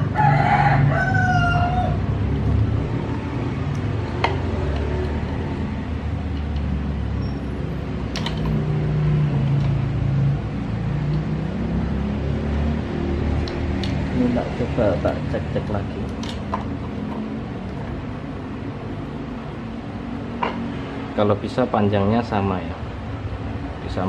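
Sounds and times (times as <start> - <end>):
rooster crowing: 0.0 - 2.1.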